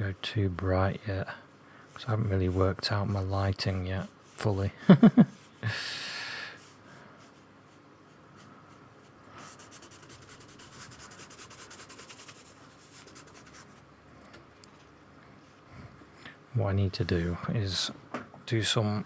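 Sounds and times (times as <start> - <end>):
paintbrush on paper: 2.0 - 4.6, 7.2 - 13.8.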